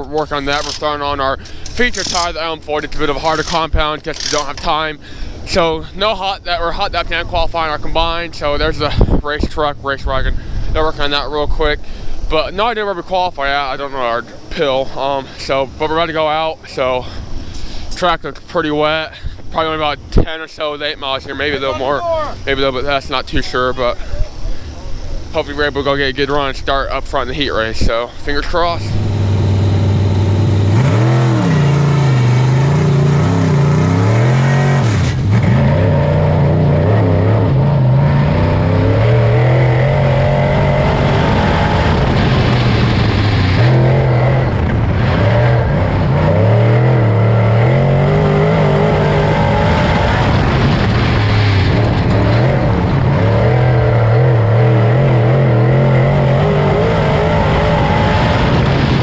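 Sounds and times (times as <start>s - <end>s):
racing car engine: 0.1s - 4.6s, 28.6s - 59.0s.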